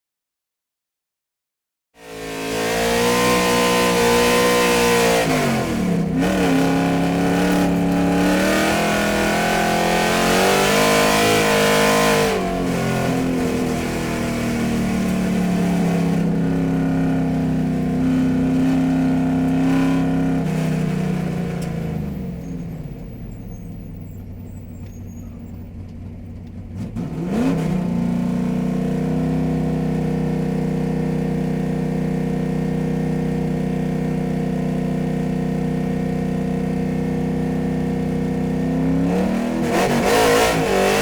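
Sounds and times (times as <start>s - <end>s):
car engine revving: 2.0s - 23.2s, 26.6s - 41.0s.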